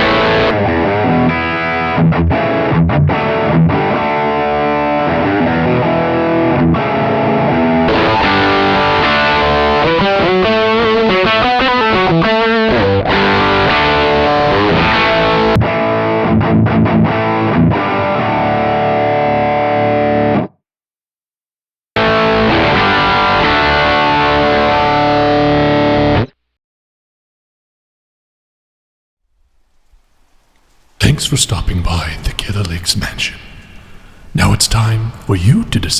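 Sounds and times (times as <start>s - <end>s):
distorted electric guitar riffs: 0.0s - 20.5s, 22.0s - 26.4s.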